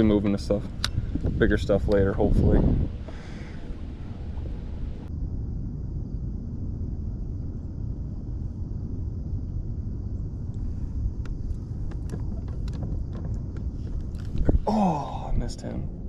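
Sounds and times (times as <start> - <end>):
wind buffeting microphone: 0.0 - 16.0
small clicks and ticks: 11.2 - 14.5.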